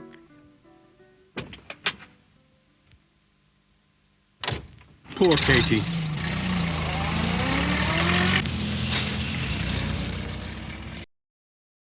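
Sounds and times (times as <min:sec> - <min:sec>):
van engine accelerating: 0:05.2 - 0:11.1.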